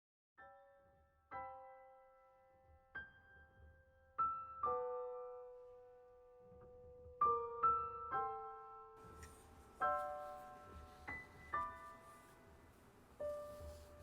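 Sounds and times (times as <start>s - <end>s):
soft piano notes: 0.4s - 14.0s.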